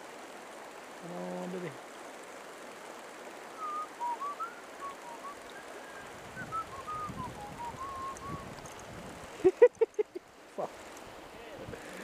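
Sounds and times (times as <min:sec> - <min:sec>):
river water rushing: 0:00.0 - 0:09.6, 0:10.2 - 0:12.0
person whistling a tune: 0:03.6 - 0:05.4, 0:06.4 - 0:08.4.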